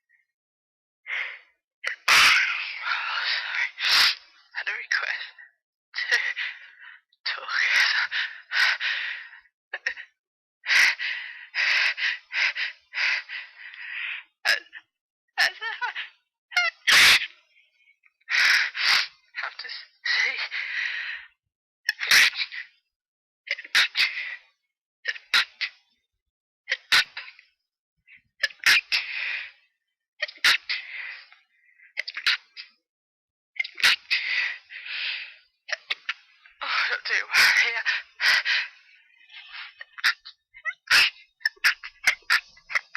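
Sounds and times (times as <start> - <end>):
gasping breaths: 6.2 - 14.8, 20.1 - 21.4, 33.8 - 42.9.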